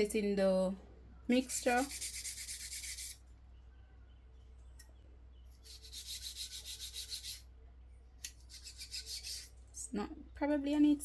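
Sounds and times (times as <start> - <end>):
toothbrush scrubbing: 1.5 - 3.2, 5.6 - 7.4, 8.4 - 9.5.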